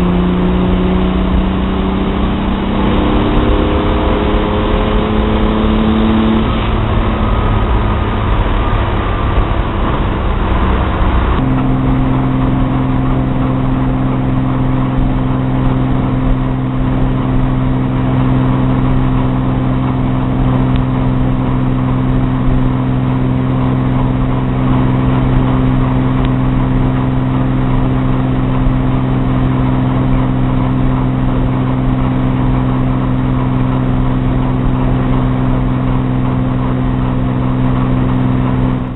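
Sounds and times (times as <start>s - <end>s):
engine running: 0.0s - 38.9s.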